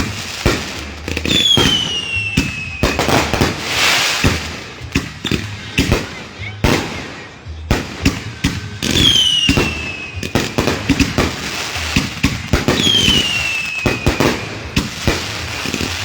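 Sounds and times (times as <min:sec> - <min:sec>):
fireworks bangs and crackles: 0:00.0 - 0:16.0
falling firework whistle: 0:01.3 - 0:04.2, 0:12.7 - 0:14.7.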